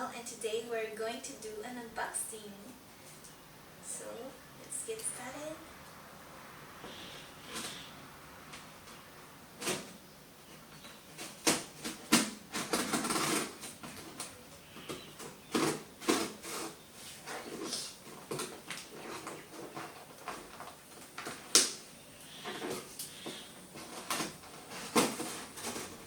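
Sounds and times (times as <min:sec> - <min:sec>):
packaging rustling and knocks: 0:10.9 - 0:21.8, 0:22.5 - 0:26.0.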